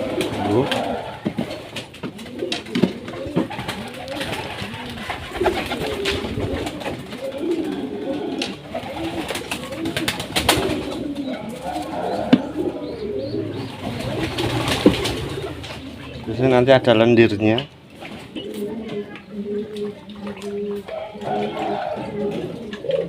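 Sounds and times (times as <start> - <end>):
pigeons cooing: 0.0 - 23.0.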